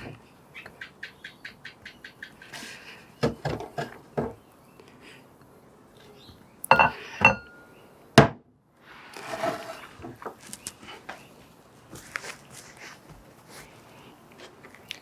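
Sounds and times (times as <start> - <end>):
metal tools clinking and knocking: 6.7 - 7.6.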